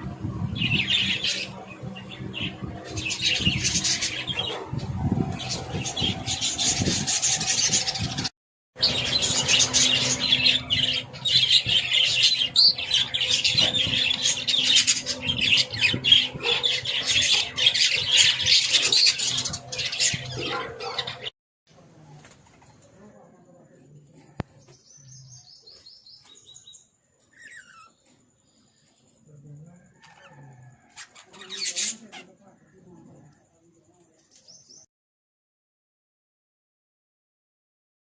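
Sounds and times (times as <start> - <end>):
budgerigars chattering and squawking: 0.4 - 21.3, 30.0 - 32.7.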